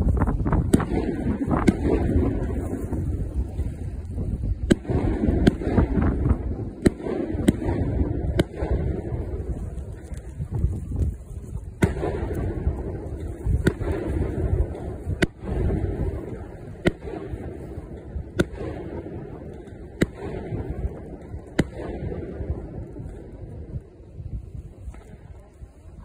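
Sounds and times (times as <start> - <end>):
low rumbling booms: 0.0 - 25.4
fireworks cracking: 0.0 - 26.0.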